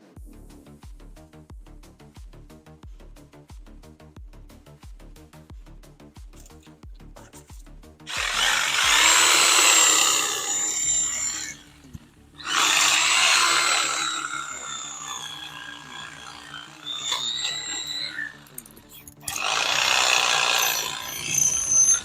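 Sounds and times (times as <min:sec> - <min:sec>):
faint background music: 0:00.0 - 0:22.0
reciprocating saw cutting branches: 0:08.1 - 0:22.0.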